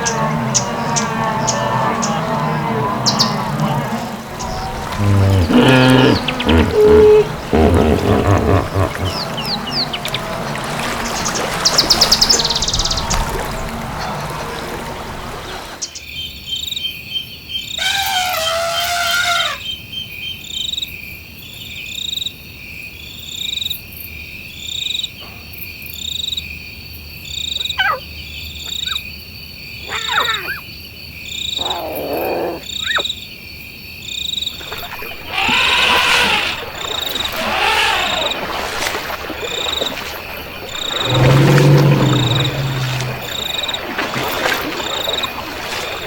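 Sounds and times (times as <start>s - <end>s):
loud animal calls: 0.0s - 14.5s, 17.8s - 19.7s, 31.6s - 33.1s, 34.6s - 44.0s
frogs and insects calling: 0.0s - 20.8s, 26.0s - 46.0s.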